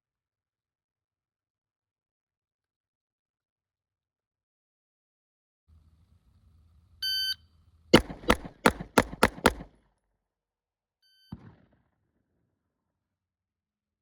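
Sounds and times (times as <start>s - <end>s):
shot timer beep: 7.0s - 7.4s
pistol shots: 8.0s - 9.7s.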